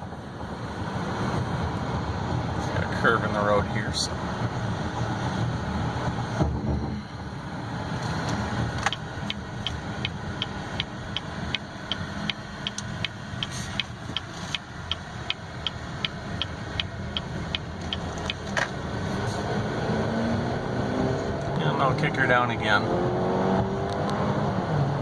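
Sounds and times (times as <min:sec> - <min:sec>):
road and engine hum: 0:00.0 - 0:25.0
turn signal ticking: 0:08.7 - 0:18.8.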